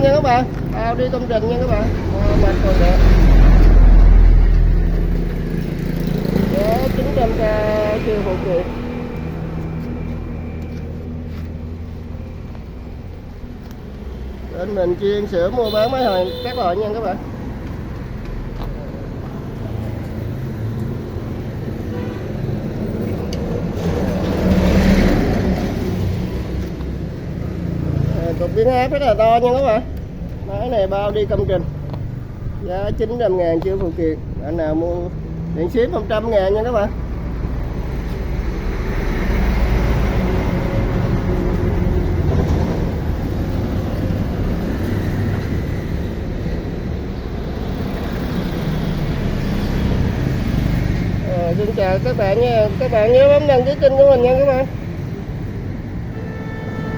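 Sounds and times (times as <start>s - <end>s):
road traffic: 0.0s - 56.9s
vehicle passing close by: 1.3s - 12.5s, 17.0s - 33.1s, 37.0s - 53.2s.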